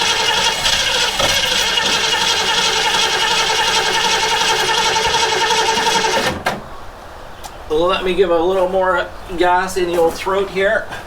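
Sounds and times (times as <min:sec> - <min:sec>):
starter cranking engine: 0:00.0 - 0:06.4.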